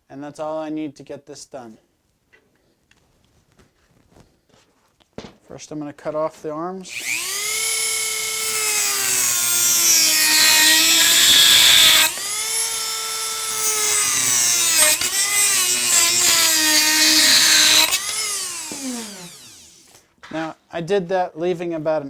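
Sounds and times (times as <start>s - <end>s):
rotary tool whining: 6.9s - 20.0s.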